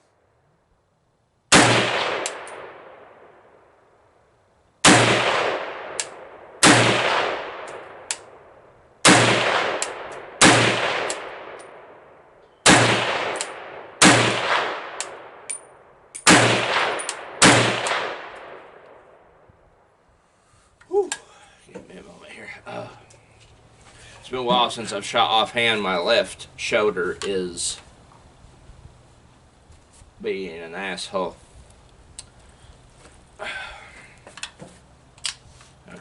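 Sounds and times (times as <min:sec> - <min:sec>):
rifle shots: 0:01.5 - 0:03.4, 0:04.8 - 0:12.0, 0:12.6 - 0:15.5, 0:16.2 - 0:19.2.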